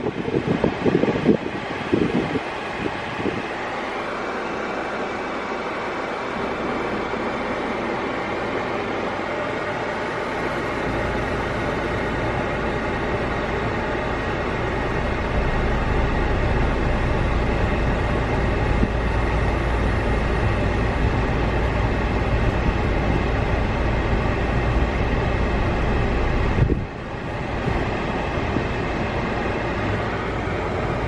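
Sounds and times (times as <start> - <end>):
deep rumble: 13.7 - 31.0.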